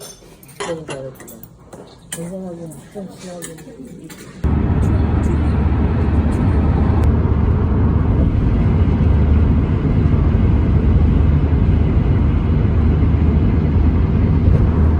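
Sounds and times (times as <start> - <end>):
road and engine rumble in car: 4.4 - 14.9.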